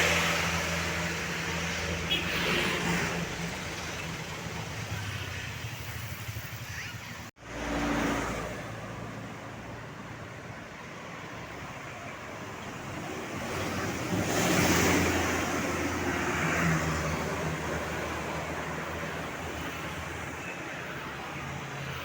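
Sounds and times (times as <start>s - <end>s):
road traffic passing: 0.0s - 22.0s.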